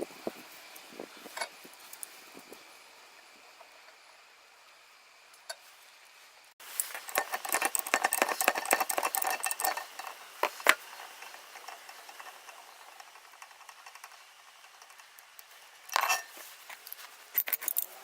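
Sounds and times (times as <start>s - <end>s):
dense clicking and scraping: 0.1s - 2.6s, 6.6s - 18.0s
metal tools handled on workbench: 6.6s - 12.6s, 15.9s - 18.0s.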